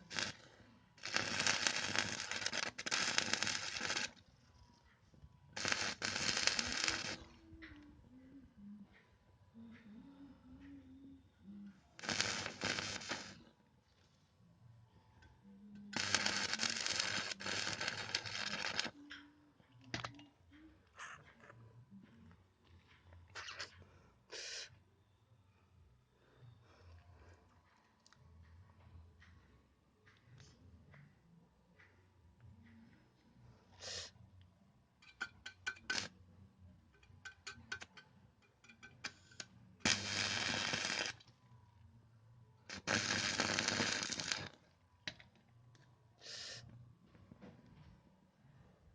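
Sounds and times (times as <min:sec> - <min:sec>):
welding arc crackling: 0:00.0 - 0:00.4, 0:01.0 - 0:04.2, 0:05.6 - 0:07.4, 0:12.0 - 0:13.5, 0:15.9 - 0:19.0, 0:35.7 - 0:36.1, 0:39.0 - 0:41.3, 0:42.7 - 0:44.6
short crackles and ticks: 0:00.1 - 0:00.4, 0:01.0 - 0:04.2, 0:05.6 - 0:07.8, 0:12.0 - 0:13.4, 0:16.0 - 0:19.2, 0:38.7 - 0:41.4, 0:42.7 - 0:44.6.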